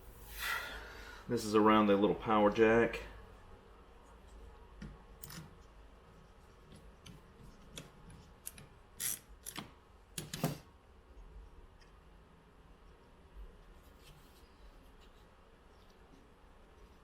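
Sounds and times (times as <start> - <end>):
small clicks of parts handled: 6.7 - 10.6.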